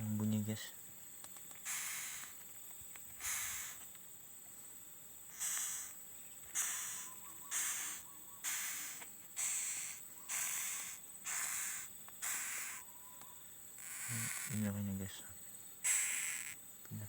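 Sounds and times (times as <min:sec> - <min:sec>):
animal hissing: 0:01.6 - 0:02.4, 0:03.2 - 0:03.8, 0:05.3 - 0:12.9, 0:13.8 - 0:14.7, 0:15.8 - 0:16.6.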